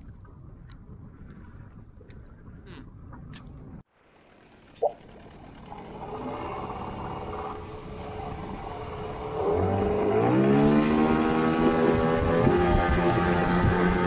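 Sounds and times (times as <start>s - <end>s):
outboard motor running: 3.9s - 14.0s.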